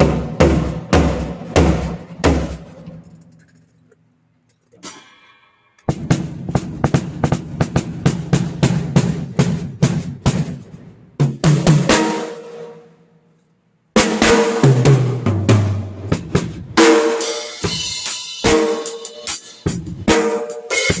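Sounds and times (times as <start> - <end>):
drum kit playing: 0.0 - 3.0, 4.8 - 12.7, 14.0 - 21.0.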